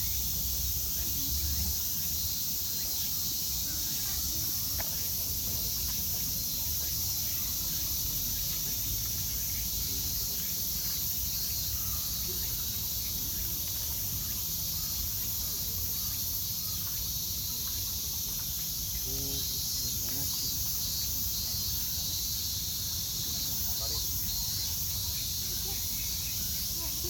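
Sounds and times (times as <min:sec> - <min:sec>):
cicada chorus drone: 0:00.0 - 0:27.0.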